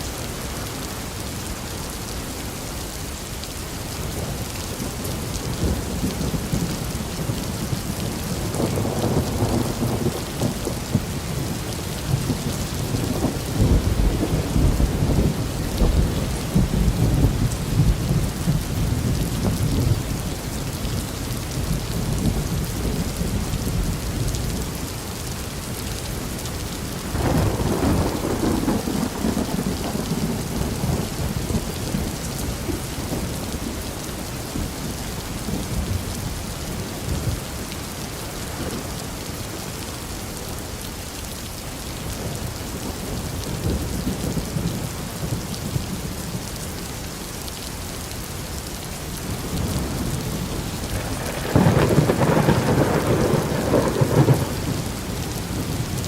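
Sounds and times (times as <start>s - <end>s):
steady rain: 0.0s - 56.0s
thunder rumbling: 5.5s - 20.3s, 27.1s - 33.9s, 49.2s - 56.0s.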